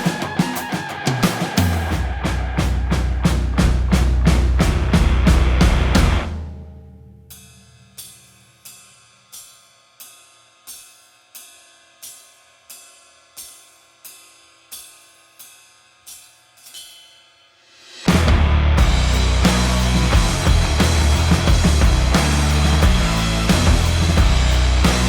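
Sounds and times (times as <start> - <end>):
loud music: 0.0 - 6.3, 18.1 - 25.0
cymbal ringing: 6.3 - 25.0.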